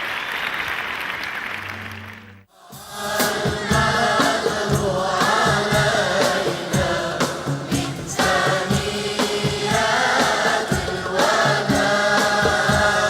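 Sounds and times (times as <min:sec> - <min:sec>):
applause: 0:00.0 - 0:02.5
choir singing: 0:02.5 - 0:13.0
regular drum beat: 0:02.6 - 0:13.0.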